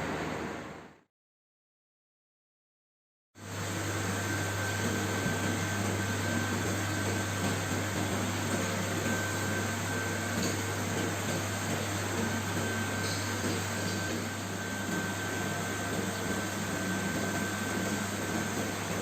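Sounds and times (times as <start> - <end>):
mechanical hum and hiss: 3.4 - 19.0.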